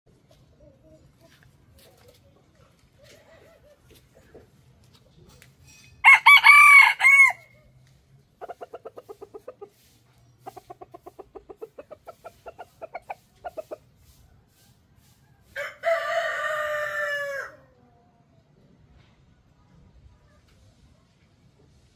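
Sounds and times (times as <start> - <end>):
chickens clucking: 0.1 - 5.6, 8.2 - 19.1
rooster crowing: 6.0 - 7.5, 15.5 - 17.7.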